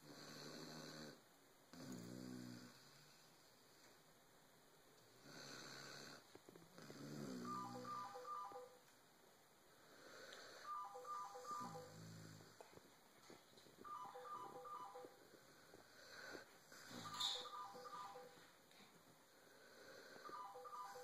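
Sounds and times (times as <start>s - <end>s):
dog snoring: 0.0s - 3.3s, 5.1s - 8.5s, 9.8s - 12.9s, 13.8s - 18.4s, 19.4s - 21.0s
descending electronic beeps: 7.4s - 8.8s, 10.7s - 12.0s, 13.8s - 15.2s, 16.9s - 18.4s, 20.3s - 21.0s
airy inhale: 9.8s - 10.8s.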